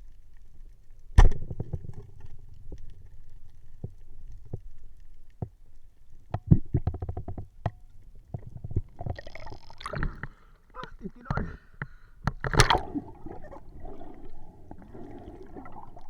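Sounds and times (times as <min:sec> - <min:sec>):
low underwater rumble: 0:12.6 - 0:16.0.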